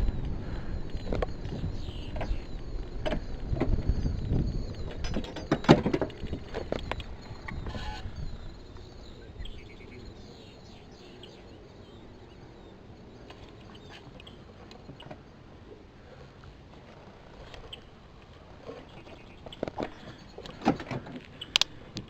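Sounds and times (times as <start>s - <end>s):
rustling with knocks: 0.0s - 8.0s
small birds chirping: 0.0s - 22.0s.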